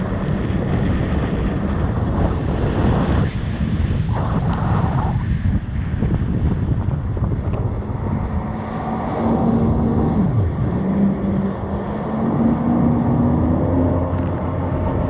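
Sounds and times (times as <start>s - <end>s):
jet ski engine: 0.0s - 15.0s
wind buffeting microphone: 0.0s - 15.0s
water splashing: 7.4s - 15.0s.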